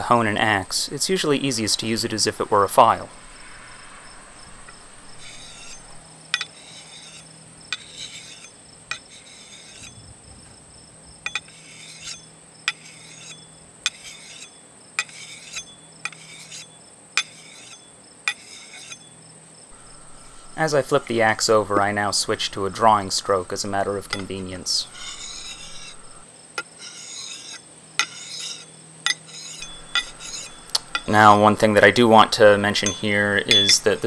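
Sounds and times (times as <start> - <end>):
sharpening stone scraping axe blade: 4.6 - 10.0, 11.2 - 34.0.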